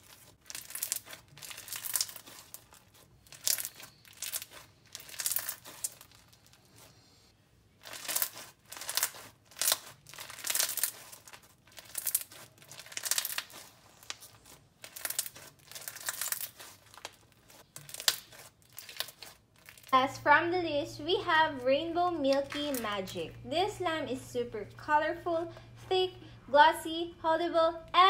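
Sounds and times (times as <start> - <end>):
slime crackling and popping: 0.0 - 6.9, 7.8 - 20.0.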